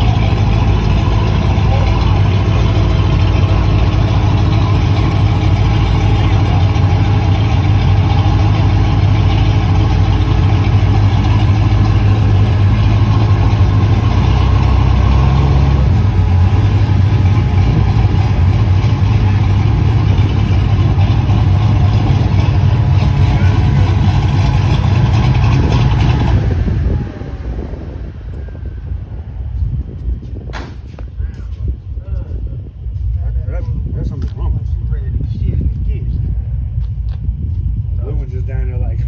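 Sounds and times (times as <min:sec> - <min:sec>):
car engine droning: 0:00.0 - 0:31.2.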